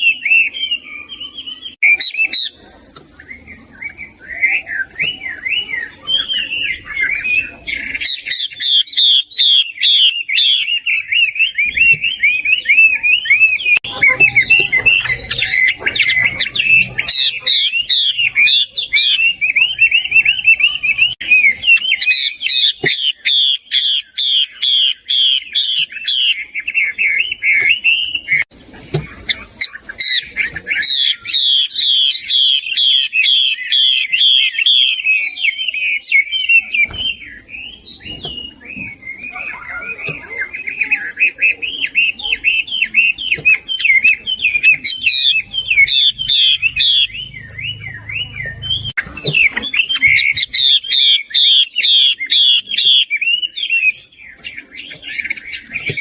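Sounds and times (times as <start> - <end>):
bird singing whistled notes: 0.0 - 56.0.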